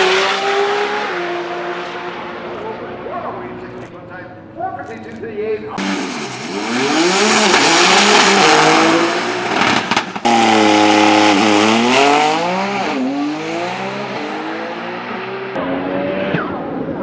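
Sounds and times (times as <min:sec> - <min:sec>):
race car engines revving: 0:00.0 - 0:04.0, 0:05.8 - 0:17.0
loud rushing noise: 0:05.8 - 0:16.3.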